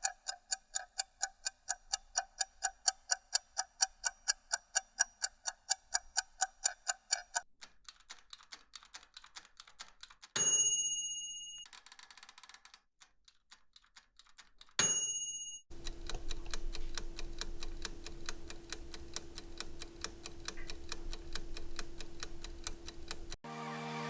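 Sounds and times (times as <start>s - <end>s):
timer ticking: 0.0s - 7.5s, 15.7s - 23.4s
bell ding: 10.4s - 11.6s, 14.8s - 15.6s
steady hum: 15.7s - 23.4s.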